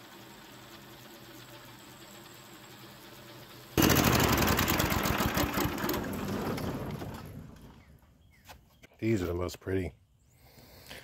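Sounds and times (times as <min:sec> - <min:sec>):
small gasoline engine running: 0:00.0 - 0:07.7.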